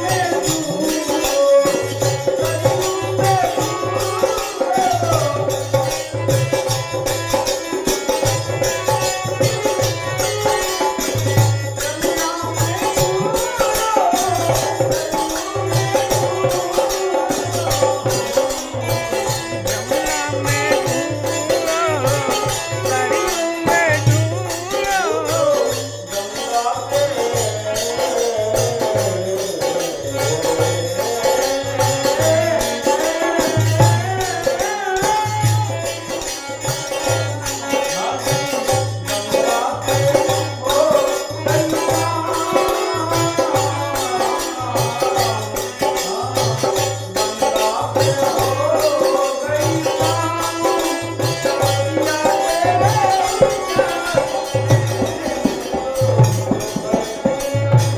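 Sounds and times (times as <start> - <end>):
hand drum beat: 0.0 - 26.2, 38.3 - 57.9
jingling percussion: 0.0 - 57.9.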